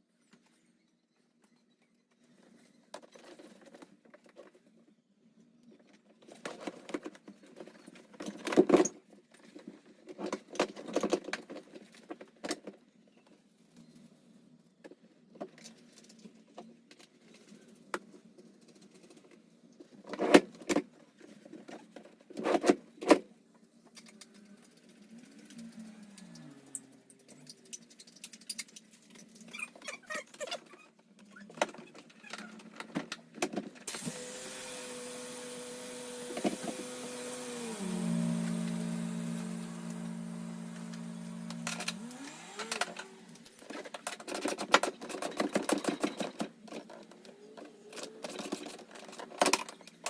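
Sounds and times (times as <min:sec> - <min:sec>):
handling clicks and knocks: 0:40.8 - 0:50.0.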